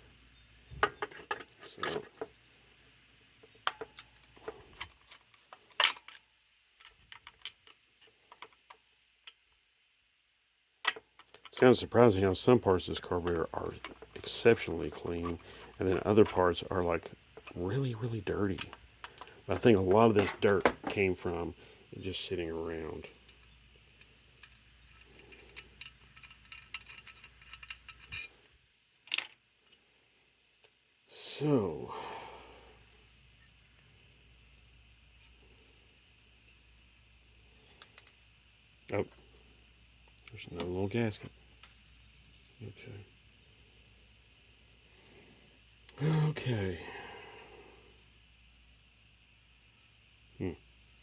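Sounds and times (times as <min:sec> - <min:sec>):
small metal parts clicking: 0:03.5 - 0:09.6, 0:18.5 - 0:20.7, 0:23.2 - 0:28.4, 0:29.0 - 0:29.8.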